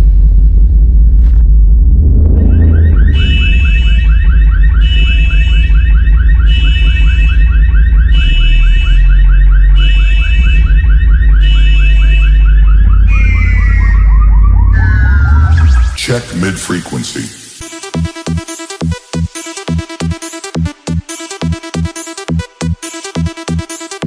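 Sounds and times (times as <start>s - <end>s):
heavy sub-bass: 0.0s - 18.1s
alarm-like synth warble: 2.0s - 16.6s
pulsing high electronic tone: 2.0s - 17.6s.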